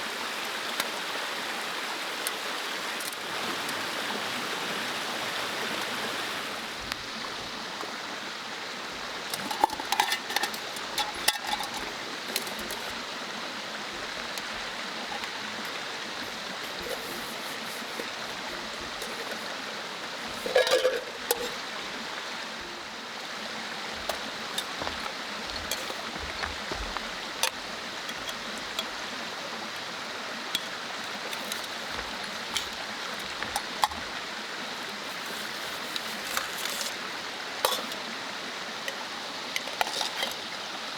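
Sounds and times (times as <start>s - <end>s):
mountain stream rushing: 0.0s - 40.9s
light clinks and taps: 9.3s - 13.0s, 14.0s - 21.6s, 24.0s - 29.1s.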